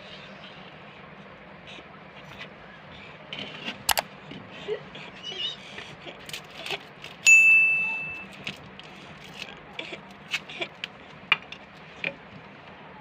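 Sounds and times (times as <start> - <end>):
bright metallic ding: 7.2 - 8.3.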